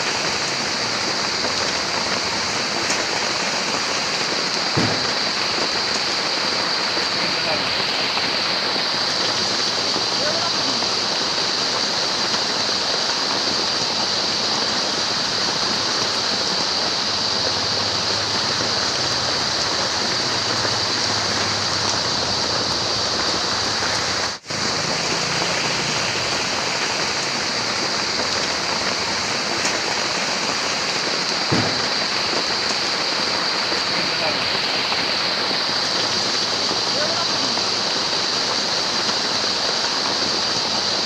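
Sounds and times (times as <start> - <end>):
steady rain falling: 0.0 - 41.0.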